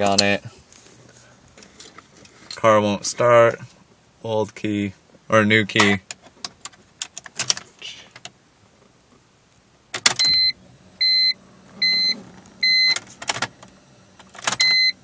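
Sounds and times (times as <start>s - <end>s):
electronic warning beeps: 10.2s - 13.0s, 14.6s - 15.0s.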